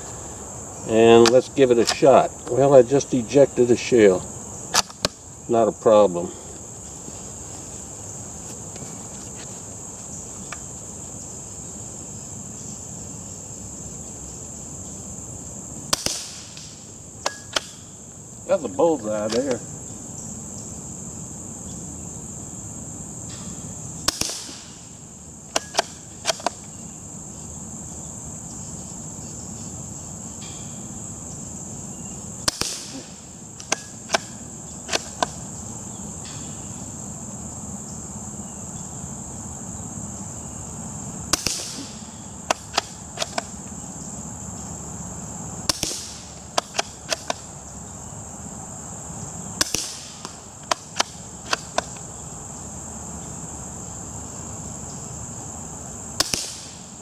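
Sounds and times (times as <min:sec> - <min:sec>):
insects chirping: 0:00.0 - 0:57.0
suppressed rifle pops: 0:01.0 - 0:02.6, 0:04.7 - 0:05.3, 0:15.9 - 0:17.9, 0:19.2 - 0:19.7, 0:23.3 - 0:24.8, 0:25.5 - 0:26.8, 0:32.4 - 0:35.6, 0:41.3 - 0:43.8, 0:45.6 - 0:47.5, 0:49.6 - 0:52.1, 0:56.2 - 0:56.8
rifle bolt clicks: 0:04.7 - 0:05.2, 0:25.6 - 0:26.7, 0:42.5 - 0:43.5.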